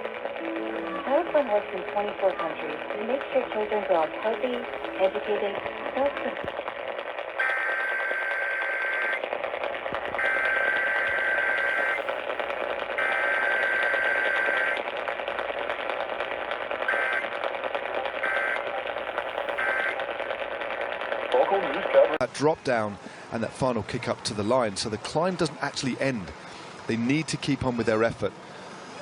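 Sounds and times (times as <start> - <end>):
short data bursts: 0.0 - 22.2
buzzy two-tone data bursts: 7.3 - 9.2, 10.1 - 14.9, 16.8 - 20.2.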